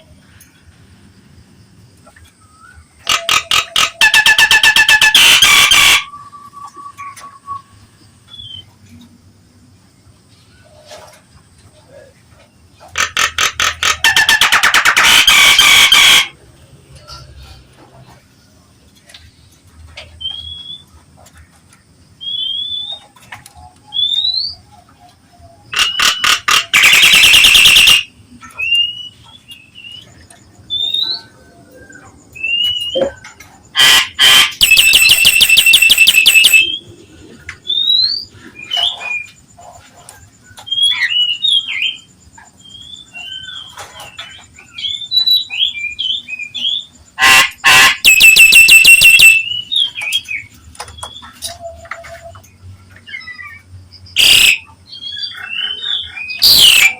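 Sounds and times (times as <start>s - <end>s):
bird harsh rasping call: 3.0s - 6.2s, 12.9s - 16.4s, 25.7s - 28.1s, 32.8s - 36.8s, 47.2s - 49.8s, 54.2s - 56.9s.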